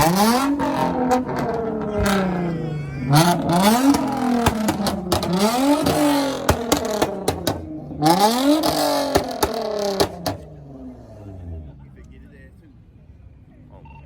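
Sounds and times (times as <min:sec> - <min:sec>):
sharp exhaust cracks: 0:00.0 - 0:10.4
car engine revving: 0:00.0 - 0:11.9.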